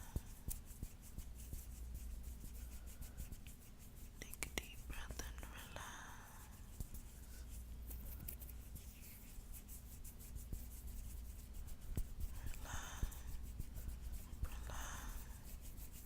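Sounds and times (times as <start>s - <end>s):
fingernails scratching a palm: 6.4s - 16.0s.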